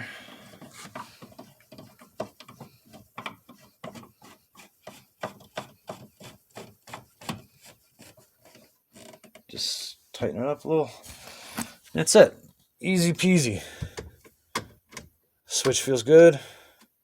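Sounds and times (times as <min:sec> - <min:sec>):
plastic rubbing and scraping: 0:00.4 - 0:09.8.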